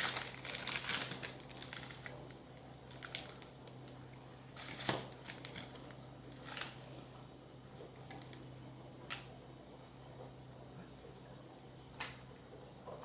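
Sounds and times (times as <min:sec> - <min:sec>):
crinkling rustles: 0:00.0 - 0:06.9
faint low hum: 0:00.0 - 0:13.0.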